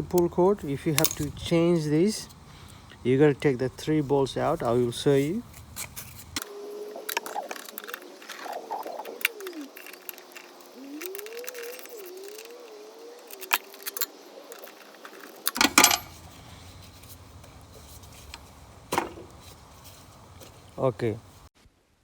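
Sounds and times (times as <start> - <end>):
hand tools clinking on metal: 0.1 - 1.6, 13.3 - 16.3.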